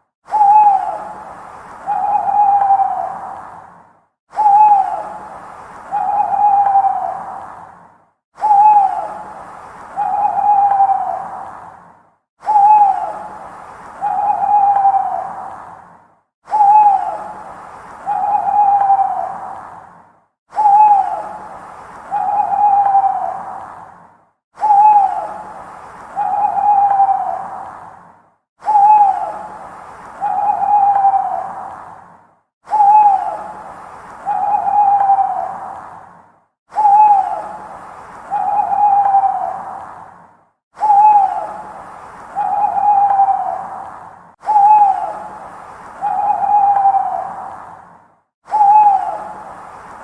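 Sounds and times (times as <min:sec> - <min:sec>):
owl hooting: 0:00.3 - 0:03.4, 0:04.3 - 0:07.5, 0:08.4 - 0:11.5, 0:12.4 - 0:15.6, 0:16.5 - 0:19.6, 0:20.5 - 0:23.6, 0:24.6 - 0:27.7, 0:28.6 - 0:31.8, 0:32.7 - 0:35.8, 0:36.7 - 0:39.9, 0:40.8 - 0:47.6, 0:48.5 - 0:49.6.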